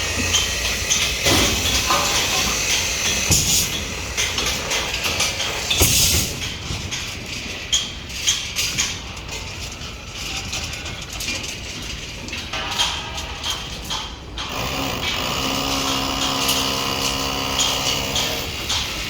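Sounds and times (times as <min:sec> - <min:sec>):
steel rebar clinking: 0:12.2 - 0:19.0.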